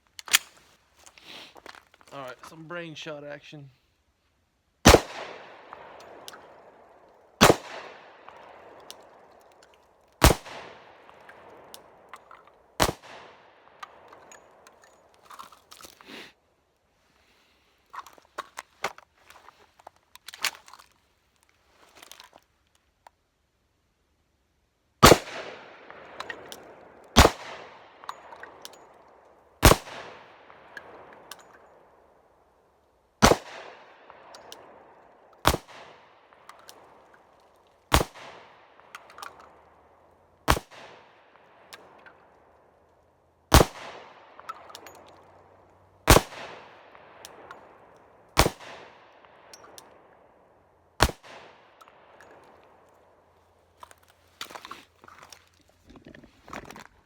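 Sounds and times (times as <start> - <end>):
pistol shots with echo: 4.9 - 6.8, 7.4 - 8.9, 10.2 - 11.7, 25.0 - 28.6, 29.6 - 31.3, 33.2 - 34.8, 37.9 - 39.0, 43.5 - 45.0, 46.1 - 47.8, 48.4 - 50.0, 51.0 - 52.2.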